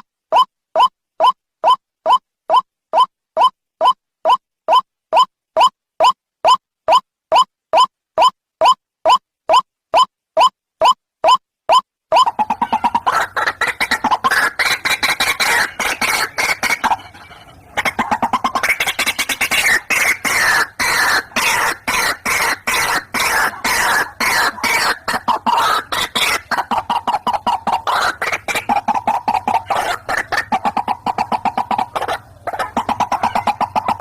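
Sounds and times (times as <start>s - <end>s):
waterhens croaking calls: 12.1s - 34.0s.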